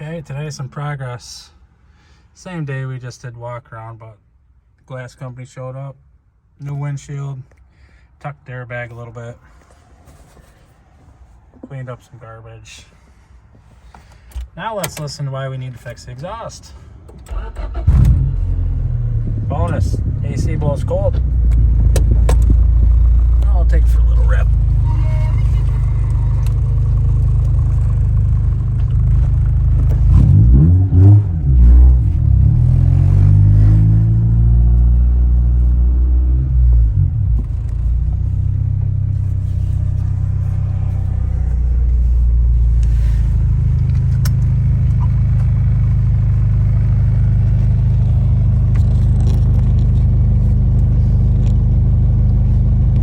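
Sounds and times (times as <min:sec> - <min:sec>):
car engine with loud exhaust: 0:16.6 - 0:53.0.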